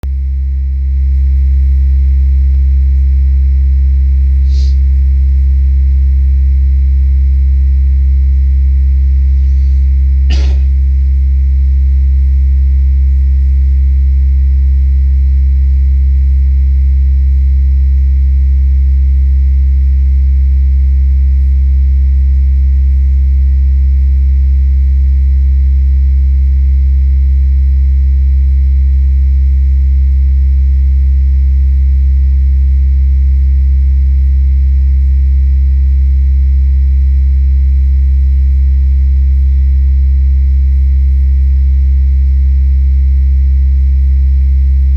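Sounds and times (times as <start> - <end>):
low electrical hum: 7.3 - 11.4.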